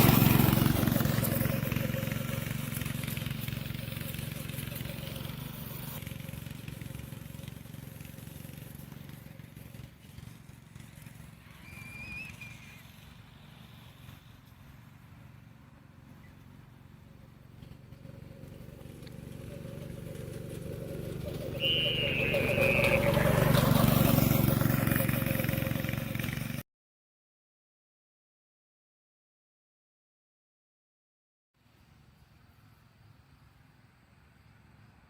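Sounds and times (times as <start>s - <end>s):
go-kart engine humming: 0.0s - 26.6s.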